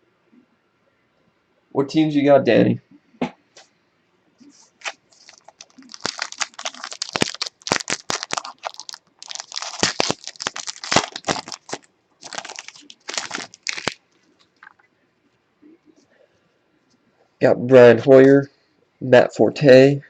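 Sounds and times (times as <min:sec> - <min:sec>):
wrapper tearing and crinkling: 0:04.8 - 0:14.7.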